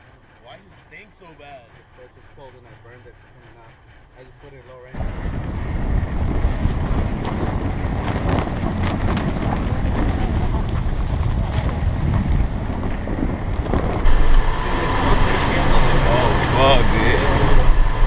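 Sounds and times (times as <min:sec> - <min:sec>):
scattered crackles: 0:05.0 - 0:16.6
wind buffeting microphone: 0:05.0 - 0:18.0.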